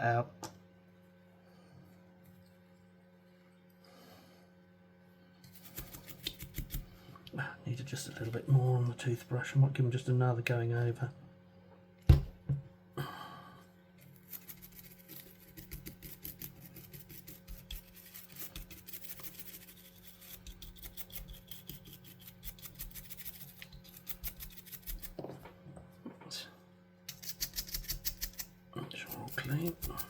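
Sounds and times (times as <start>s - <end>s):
toothbrush scrubbing plastic buttons: 14.2s - 25.1s.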